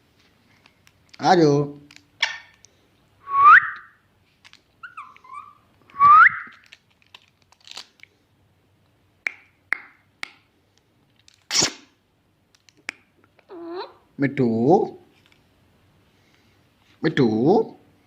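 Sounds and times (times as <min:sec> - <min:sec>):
loud rising whistles: 0:03.3 - 0:03.9, 0:06.0 - 0:06.5
short chirpy whistled notes: 0:03.3 - 0:04.0, 0:05.9 - 0:06.6.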